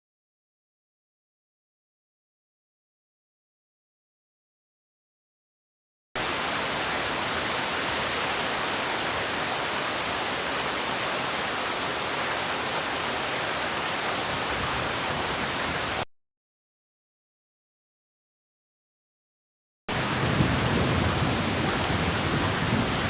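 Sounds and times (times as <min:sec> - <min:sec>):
heavy rain hissing: 0:06.2 - 0:16.0, 0:19.9 - 0:23.0.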